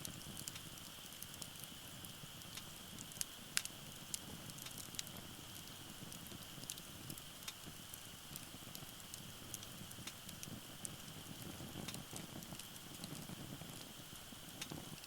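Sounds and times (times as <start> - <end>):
low rumble of flames: 0.0 - 15.0
wood fire crackling: 0.0 - 15.0.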